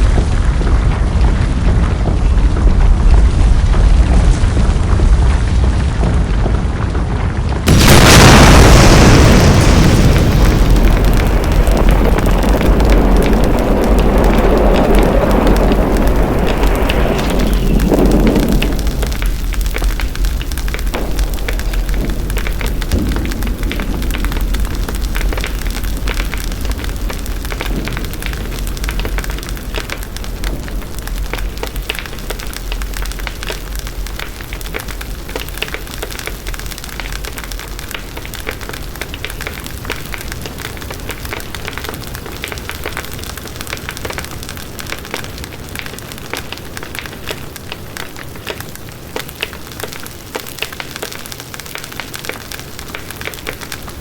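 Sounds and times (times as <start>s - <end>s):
deep rumble: 0.0s - 39.1s
dense continuous crackling: 0.0s - 54.0s.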